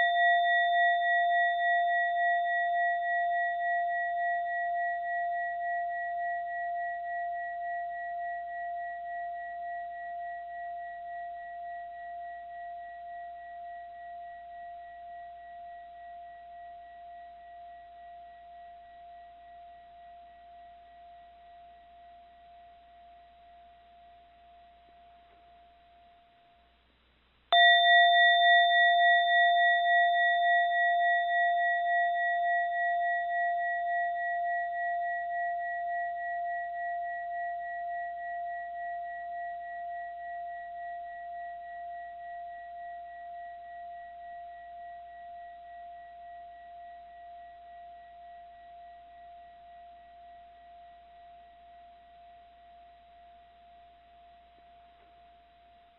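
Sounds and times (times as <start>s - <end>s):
mindfulness bell ringing: 27.6s - 34.6s.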